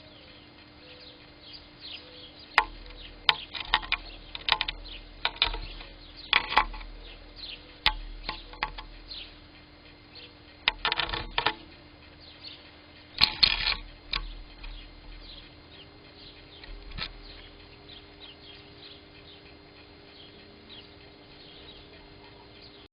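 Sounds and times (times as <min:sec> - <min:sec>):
faint high chirps: 0:00.0 - 0:09.4, 0:14.2 - 0:22.9
low electrical hum: 0:00.0 - 0:22.9
bird tapping on microphone: 0:07.8 - 0:09.0.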